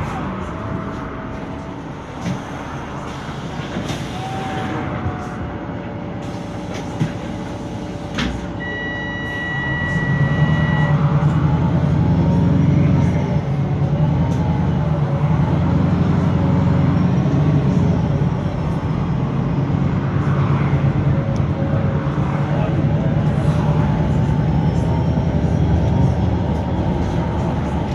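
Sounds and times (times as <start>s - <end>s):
bus engine groaning drone: 0.0s - 27.9s
steady electronic beep: 8.6s - 11.1s.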